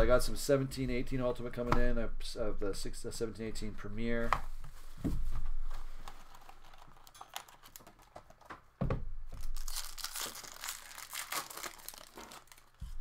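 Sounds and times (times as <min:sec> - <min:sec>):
packaging tearing and crinkling: 0:06.0 - 0:08.5, 0:09.4 - 0:13.0.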